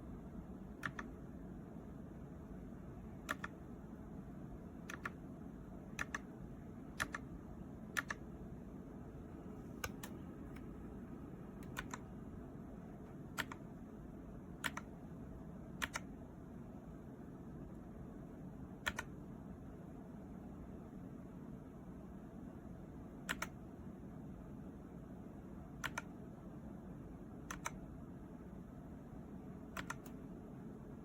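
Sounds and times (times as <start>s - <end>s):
steady low hum: 0.0s - 31.0s
keyboard key clicks: 0.8s - 1.1s, 3.2s - 3.6s, 4.9s - 5.2s, 5.9s - 6.3s, 7.0s - 7.2s, 7.9s - 8.2s, 9.8s - 10.7s, 11.6s - 12.1s, 15.8s - 16.1s, 18.8s - 19.1s, 23.3s - 23.6s, 27.5s - 27.8s, 29.7s - 30.2s.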